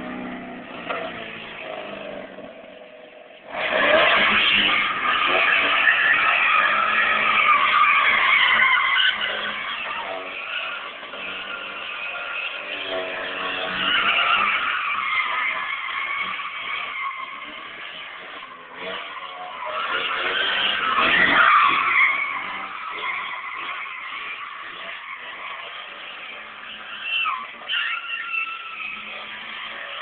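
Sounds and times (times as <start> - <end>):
tyres squealing in skids: 3.4 - 30.0
engine revving with exhaust leak: 3.5 - 8.4.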